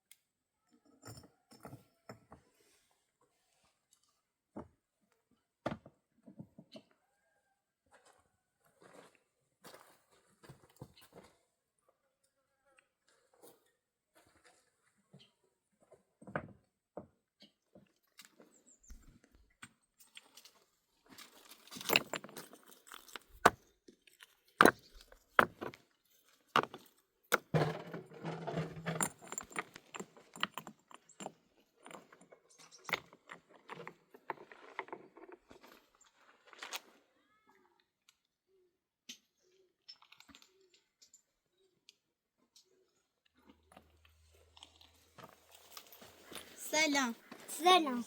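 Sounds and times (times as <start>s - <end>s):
hard objects knocking and clinking: 21.8s - 23.6s, 26.6s - 35.3s.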